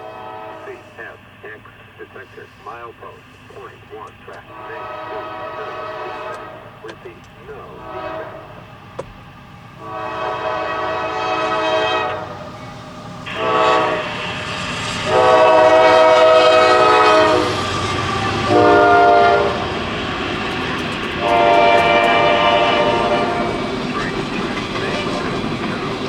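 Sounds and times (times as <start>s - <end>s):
locomotive air horn blasts: 0.0s - 1.1s, 4.4s - 6.8s, 7.6s - 8.6s, 9.8s - 12.3s, 13.3s - 14.3s, 15.0s - 19.8s, 20.4s - 23.7s
train rumbling: 0.0s - 26.0s.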